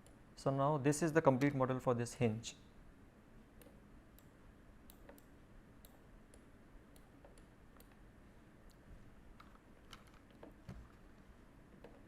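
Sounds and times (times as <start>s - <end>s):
computer mouse clicks: 3.6s - 8.0s.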